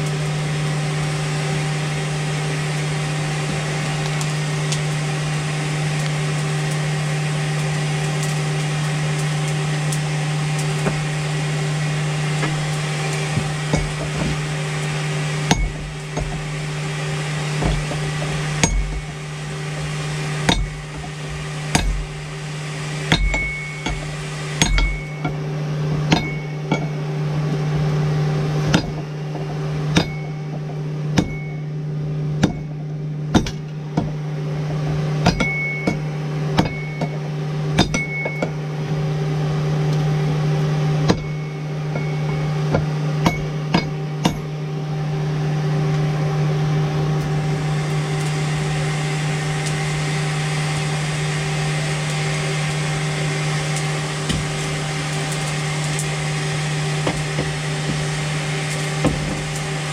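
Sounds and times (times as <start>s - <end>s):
low machine hum: 0.0s - 59.9s
hammer blows on hot steel: 1.9s - 25.4s, 26.0s - 27.0s.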